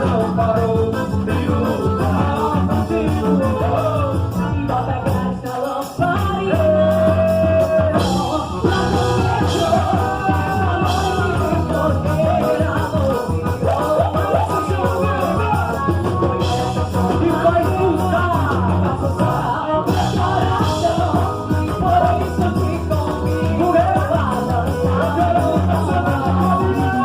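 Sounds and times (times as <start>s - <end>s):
upbeat music with singing: 0.0s - 27.0s.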